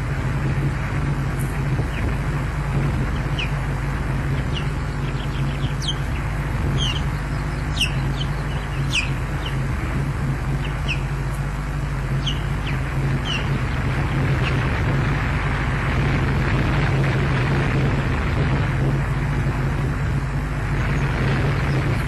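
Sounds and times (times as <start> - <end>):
low hum and hiss: 0.0 - 22.0
osprey whistled calls: 1.8 - 11.4, 12.0 - 14.6.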